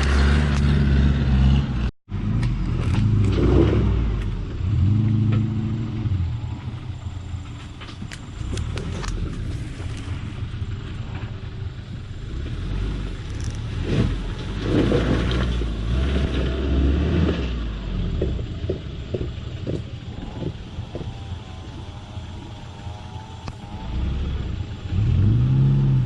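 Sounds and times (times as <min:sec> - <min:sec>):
off-road vehicle engine rumbling: 0:00.0 - 0:26.0
knocks and rattles: 0:18.1 - 0:22.5.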